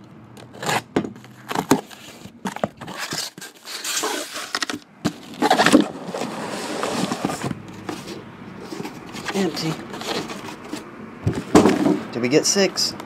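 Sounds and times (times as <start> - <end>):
packaging crinkling and rustling: 0.5 - 10.9.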